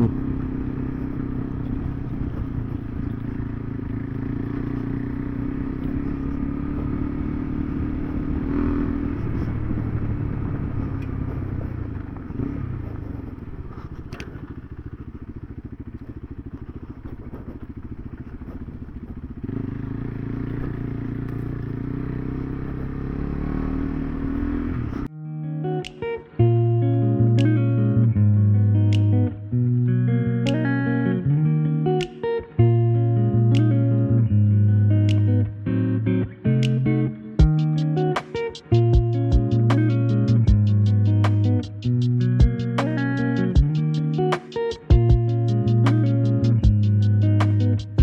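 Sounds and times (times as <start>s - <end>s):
motorcycle engine running: 0.0s - 25.1s, 37.4s - 38.0s, 38.8s - 48.0s.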